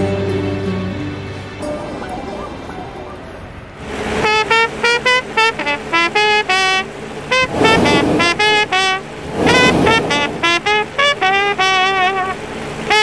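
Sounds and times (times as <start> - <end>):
jazz trumpet: 4.2 - 13.0
loud rushing burst: 6.9 - 11.6.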